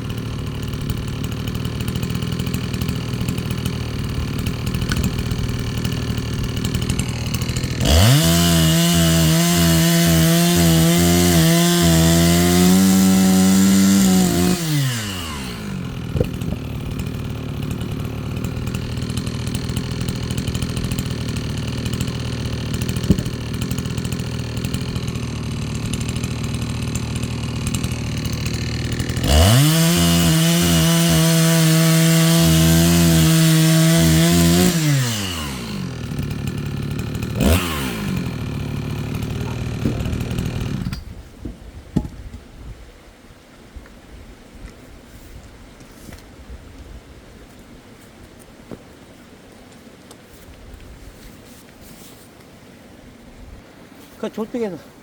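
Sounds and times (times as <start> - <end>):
chainsaw idling and revving: 0.0 - 41.1, 54.2 - 54.8
chainsaw cutting wood: 0.0 - 42.3.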